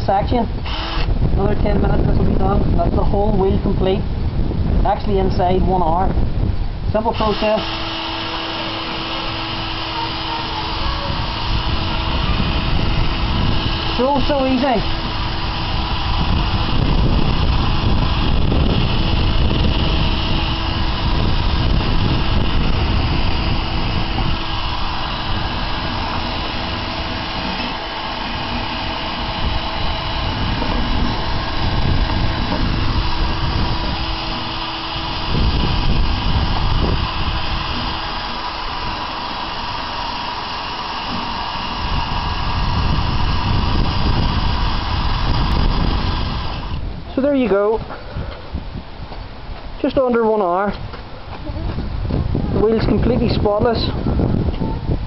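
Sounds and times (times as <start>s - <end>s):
drill motor whine: 0.6s - 1.3s, 7.0s - 47.6s.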